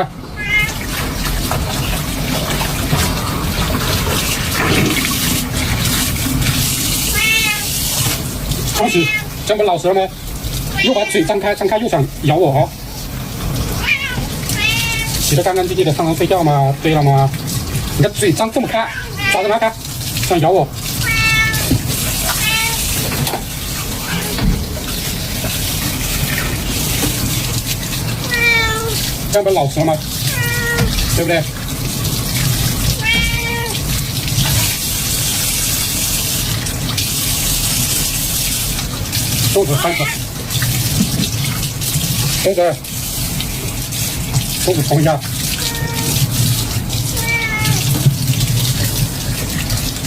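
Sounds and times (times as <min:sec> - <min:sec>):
cat meowing: 0:00.3 - 0:00.9, 0:07.1 - 0:07.7, 0:08.7 - 0:09.4, 0:10.7 - 0:11.5, 0:13.8 - 0:15.3, 0:18.6 - 0:19.6, 0:21.0 - 0:23.0, 0:24.0 - 0:24.4, 0:28.2 - 0:29.0, 0:30.3 - 0:31.0, 0:32.9 - 0:33.8, 0:39.6 - 0:40.2, 0:45.6 - 0:46.3, 0:47.1 - 0:48.0
shower water spraying: 0:00.3 - 0:50.0.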